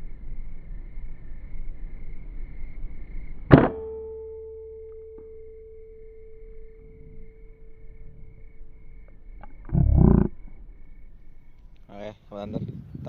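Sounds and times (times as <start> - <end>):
steady ringing tone: 3.6 - 11.6.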